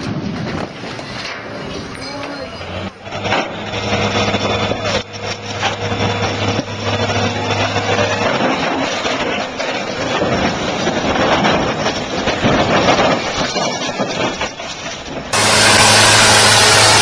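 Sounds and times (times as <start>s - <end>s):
heavy machine engine running: 2.3s - 17.0s
steady rushing noise with hum: 15.3s - 17.0s.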